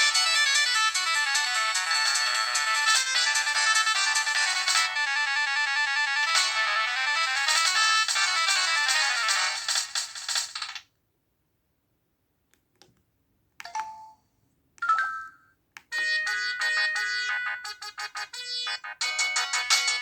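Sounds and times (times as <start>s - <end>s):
polyphonic ringtone melody: 0.0s - 9.2s, 14.8s - 20.0s
synthesized melody: 16.0s - 20.0s.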